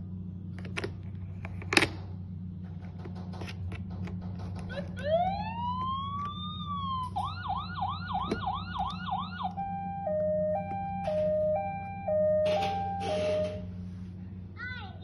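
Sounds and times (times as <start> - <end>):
steady low hum: 0.0 - 15.0
electronic toy siren: 5.0 - 13.8.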